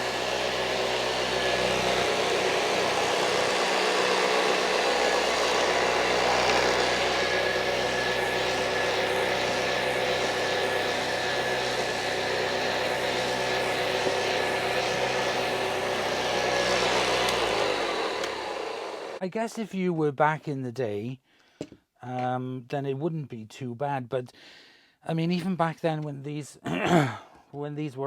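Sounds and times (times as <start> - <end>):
vacuum cleaner running: 0.0 - 19.2.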